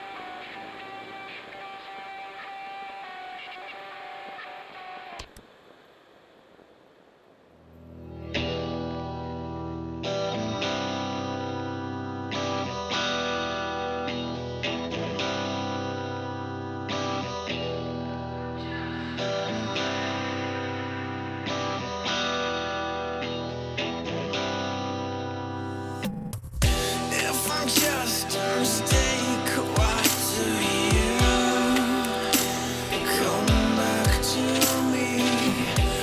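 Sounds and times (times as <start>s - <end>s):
electric guitar instrumental music: 0.0s - 5.4s, 7.8s - 36.0s.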